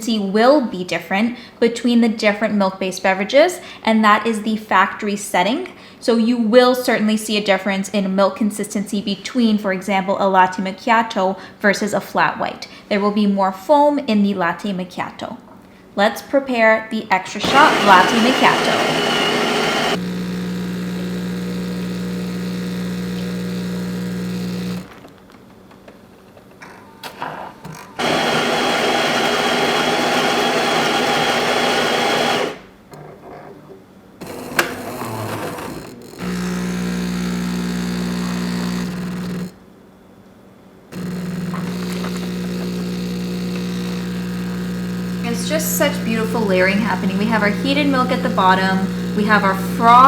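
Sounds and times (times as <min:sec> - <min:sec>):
espresso machine pump humming: 0:17.4 - 0:24.9, 0:28.0 - 0:32.6, 0:36.0 - 0:39.6, 0:40.9 - 0:50.0
grinder grinding coffee beans: 0:17.4 - 0:25.0, 0:28.0 - 0:32.6, 0:34.2 - 0:39.6, 0:40.9 - 0:50.0.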